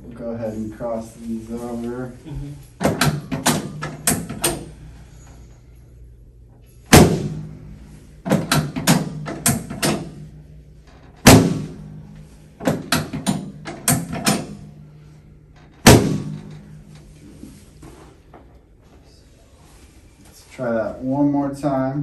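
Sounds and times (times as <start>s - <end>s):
heavy thumps on treatment table: 11.3s - 11.8s.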